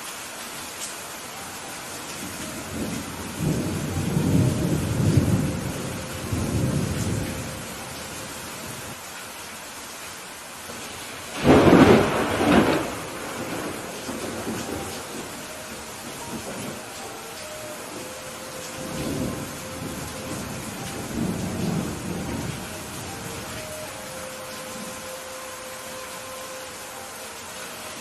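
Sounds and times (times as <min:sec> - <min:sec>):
steady rain: 0:00.0 - 0:28.0
rolling thunder rumble: 0:02.2 - 0:08.0, 0:11.3 - 0:17.0, 0:17.8 - 0:24.0
sharp thunderclap: 0:11.4 - 0:15.1.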